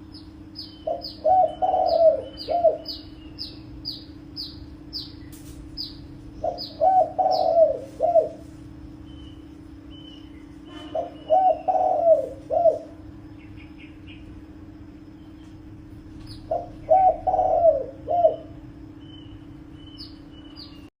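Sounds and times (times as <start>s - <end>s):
small birds chirping: 0.0s - 20.9s
steady low hum: 0.0s - 20.9s
dove cooing: 0.8s - 3.2s, 5.8s - 8.6s, 10.8s - 13.2s, 16.2s - 18.9s.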